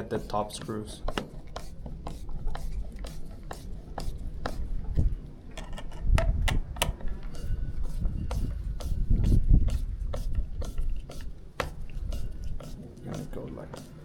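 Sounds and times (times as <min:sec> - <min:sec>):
screwdriver clicking: 0:05.6 - 0:07.1.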